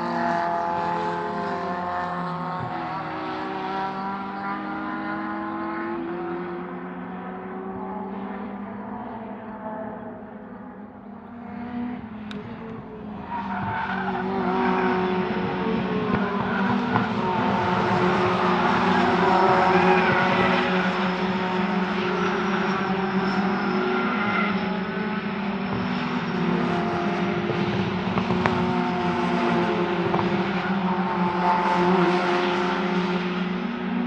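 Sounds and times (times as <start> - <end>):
racing car engines running: 11.4 - 33.7.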